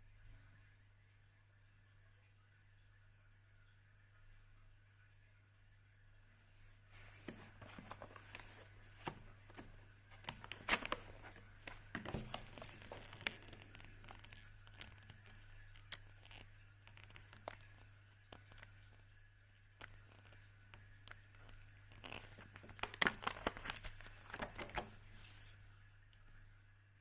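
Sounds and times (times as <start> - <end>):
low steady hum: 0.0 - 27.0
plastic packaging crinkling: 7.0 - 19.2, 19.8 - 25.6.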